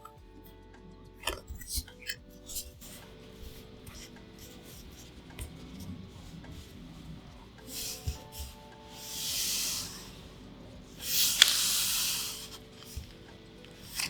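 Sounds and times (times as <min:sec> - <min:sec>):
cards rubbing and sliding: 0:01.2 - 0:14.0.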